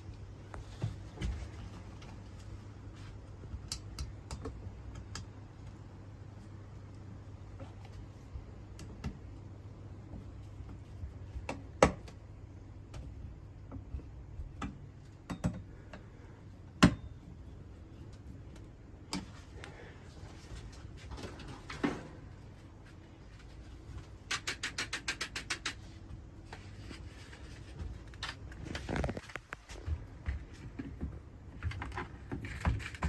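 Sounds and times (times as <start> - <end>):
low steady hum: 0.0 - 24.5
plastic parts clicking and knocking: 24.0 - 26.7.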